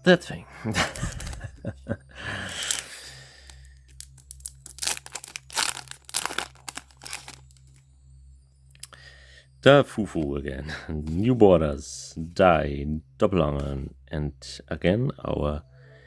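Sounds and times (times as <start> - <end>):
foil wrapper crinkling: 2.4 - 7.8
foil wrapper tearing: 2.5 - 3.0, 3.9 - 7.8.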